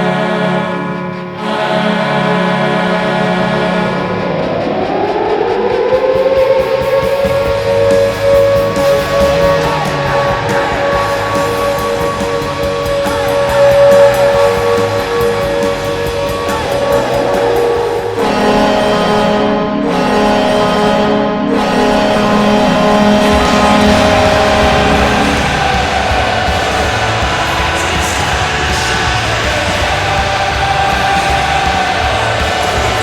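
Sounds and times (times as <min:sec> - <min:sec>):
goal horn blast: 0:00.0 - 0:04.6, 0:07.4 - 0:33.0
rock song with electric guitar: 0:00.0 - 0:19.2, 0:21.6 - 0:33.0.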